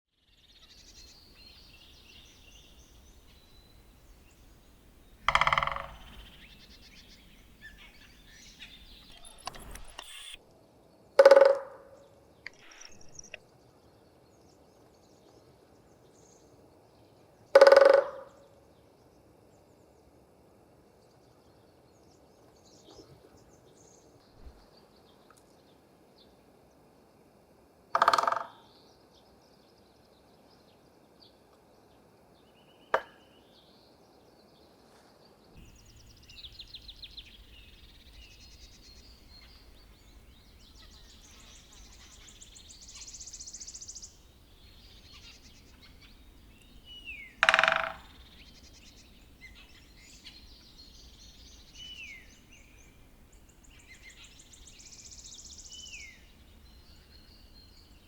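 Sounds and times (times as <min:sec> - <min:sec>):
birds singing and calling: 0:00.5 - 0:10.4, 0:12.4 - 0:13.4, 0:35.6 - 0:58.0
woodpecker hammering a trunk: 0:02.5 - 0:09.0, 0:11.2 - 0:12.0, 0:17.6 - 0:18.4, 0:28.0 - 0:28.6, 0:35.6 - 0:52.2.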